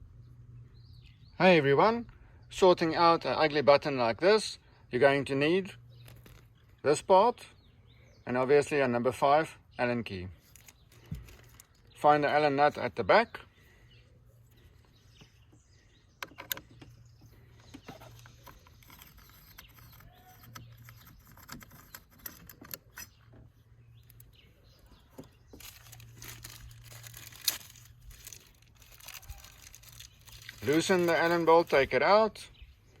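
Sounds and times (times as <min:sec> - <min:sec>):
tools clicking and rustling: 0:10.5 - 0:11.8, 0:16.2 - 0:24.3.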